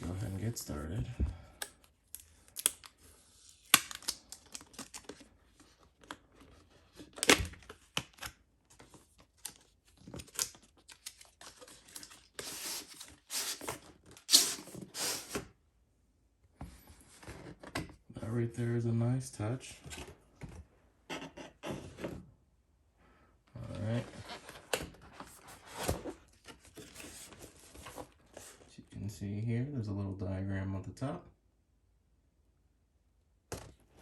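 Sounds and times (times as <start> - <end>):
cardboard tearing and rustling: 3.5 - 15.4, 24.1 - 28.6.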